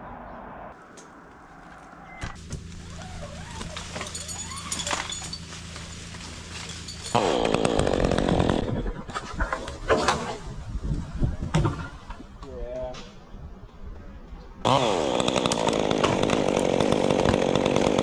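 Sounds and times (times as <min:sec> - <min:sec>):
chainsaw idling and revving: 0:05.4 - 0:08.9, 0:14.6 - 0:18.0.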